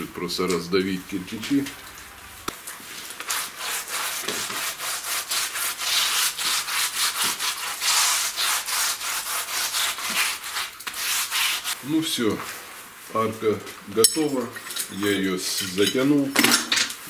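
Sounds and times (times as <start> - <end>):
hand scraping gritty surface: 2.5 - 12.3.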